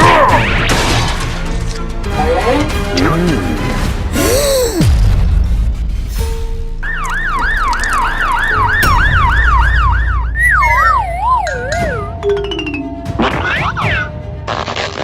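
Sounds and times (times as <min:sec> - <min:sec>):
siren wailing: 0:06.8 - 0:12.2.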